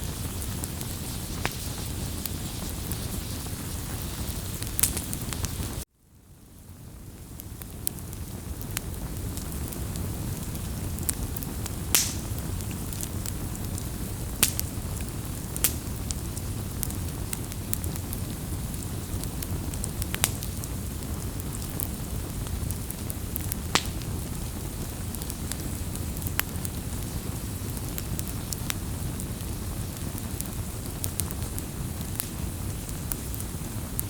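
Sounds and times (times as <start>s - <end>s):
campfire flames hissing: 0.0s - 34.0s
fire crackling and popping: 0.0s - 34.0s.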